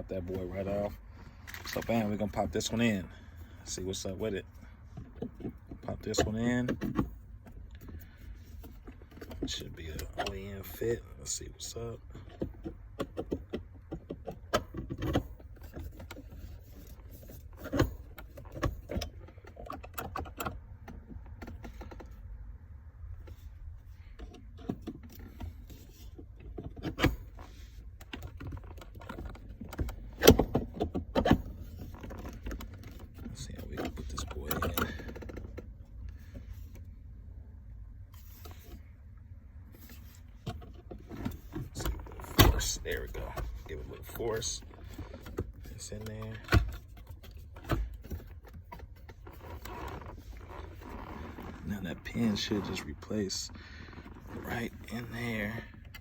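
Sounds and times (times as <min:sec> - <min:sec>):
low steady hum: 0:00.0 - 0:56.0
plastic handling noises: 0:00.3 - 0:02.8, 0:03.4 - 0:56.0
plastic shifter handle clicking: 0:24.2 - 0:36.9, 0:40.0 - 0:51.6.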